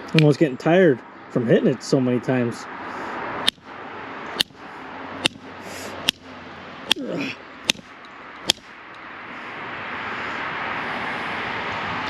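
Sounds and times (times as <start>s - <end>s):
steady rushing noise: 0.0s - 12.0s
pliers striking copper pipe: 4.4s - 4.6s, 5.2s - 5.4s, 7.7s - 8.7s.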